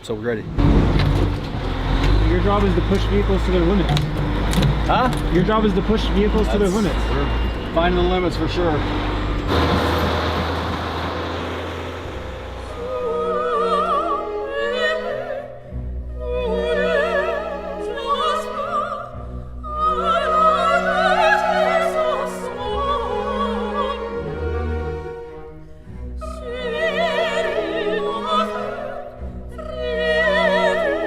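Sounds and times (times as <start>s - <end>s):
orchestral accompaniment: 0.0s - 31.0s
rushing noise: 6.5s - 13.5s.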